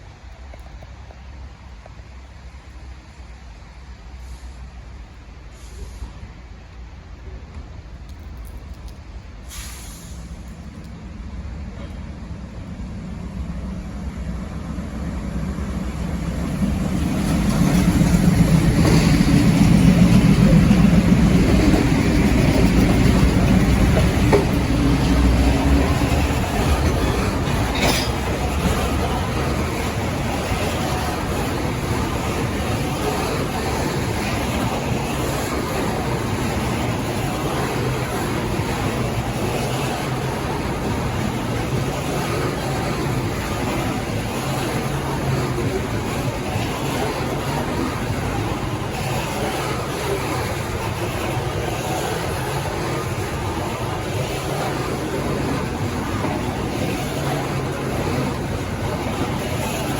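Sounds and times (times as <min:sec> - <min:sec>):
diesel locomotive engine rumble: 0:00.0 - 0:59.9
train wheels rumbling on rail: 0:00.0 - 0:59.9.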